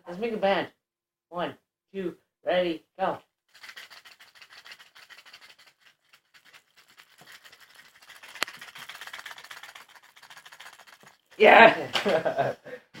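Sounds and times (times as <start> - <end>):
fishing lures rattling: 3.5 - 11.4.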